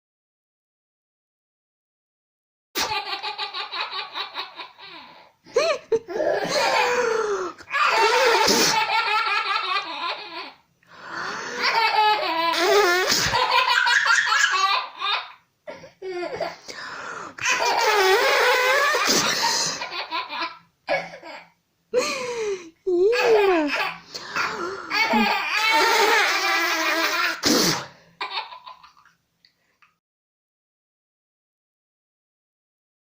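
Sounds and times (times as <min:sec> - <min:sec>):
baby laughing: 0:02.8 - 0:10.6, 0:11.6 - 0:15.4, 0:17.4 - 0:27.5, 0:28.2 - 0:29.1.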